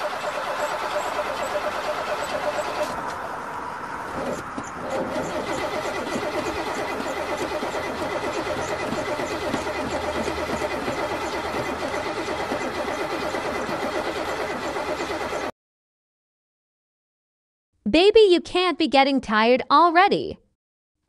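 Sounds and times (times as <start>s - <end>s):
car engine cranking on starter: 0.0s - 3.4s, 4.0s - 15.5s.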